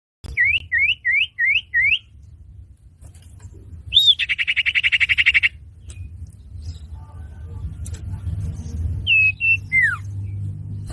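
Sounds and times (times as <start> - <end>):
rapid bird trill: 0.3 - 2.2, 3.9 - 6.1.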